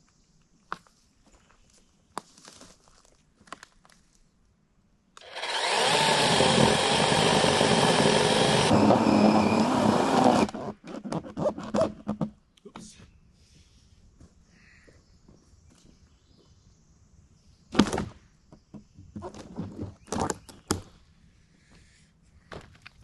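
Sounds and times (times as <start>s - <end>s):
power saw cutting wood: 5.2s - 10.7s.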